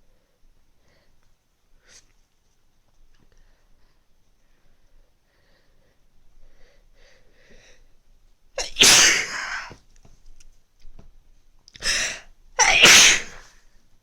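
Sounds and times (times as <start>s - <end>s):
person sneezing: 8.6s - 9.8s, 11.8s - 13.5s.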